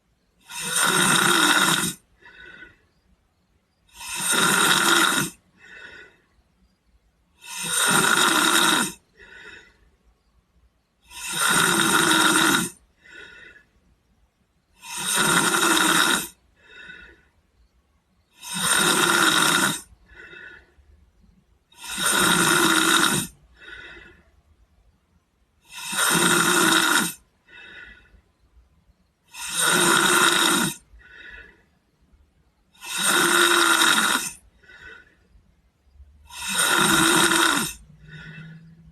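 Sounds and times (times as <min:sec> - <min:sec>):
boy snoring: 0:00.4 - 0:02.8, 0:03.8 - 0:06.2, 0:07.3 - 0:09.8, 0:11.0 - 0:13.7, 0:14.7 - 0:17.2, 0:18.3 - 0:20.7, 0:21.7 - 0:24.2, 0:25.6 - 0:28.2, 0:29.2 - 0:31.7, 0:32.7 - 0:35.2, 0:36.2 - 0:38.9
faint breathing out: 0:02.0 - 0:04.2, 0:05.4 - 0:06.8, 0:09.0 - 0:10.9, 0:12.8 - 0:14.7, 0:16.5 - 0:17.7, 0:19.8 - 0:21.9, 0:23.3 - 0:24.7, 0:27.2 - 0:29.0, 0:30.8 - 0:32.2, 0:34.3 - 0:35.6, 0:37.6 - 0:38.9.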